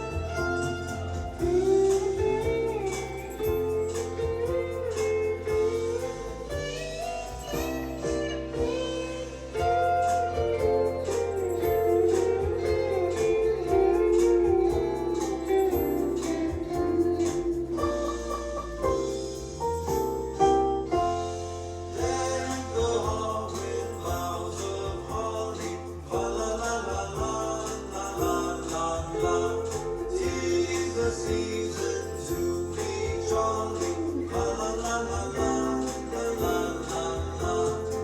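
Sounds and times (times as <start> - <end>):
carol singing with guitar: 22.0 - 38.0.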